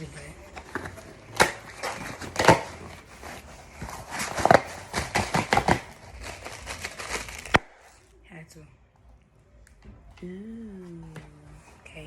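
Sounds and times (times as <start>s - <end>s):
cardboard box rustling and scraping: 0.0s - 7.7s.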